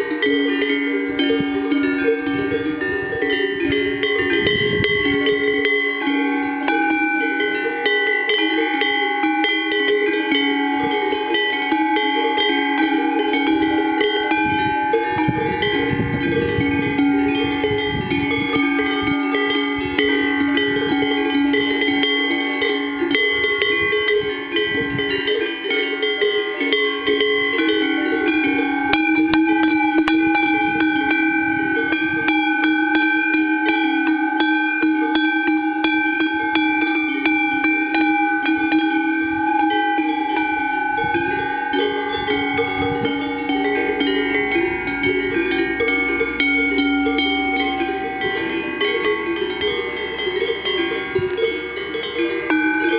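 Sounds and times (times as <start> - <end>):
cow bells clanging: 0.0 - 52.9.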